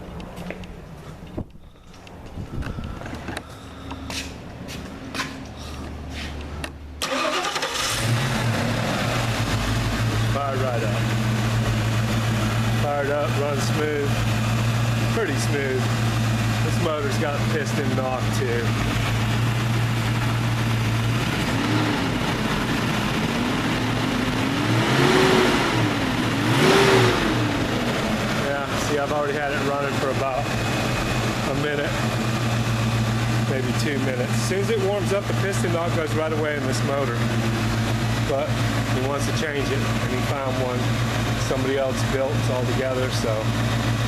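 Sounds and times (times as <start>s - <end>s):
car engine idling: 0.0s - 44.0s
car engine cranking on starter: 7.0s - 14.4s.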